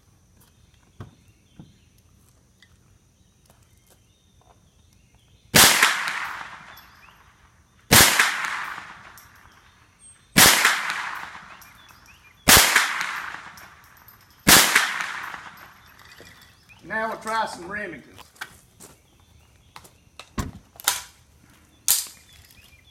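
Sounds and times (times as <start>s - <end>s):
rifle shots echoing: 5.6s - 7.2s, 7.9s - 9.6s, 10.4s - 16.1s.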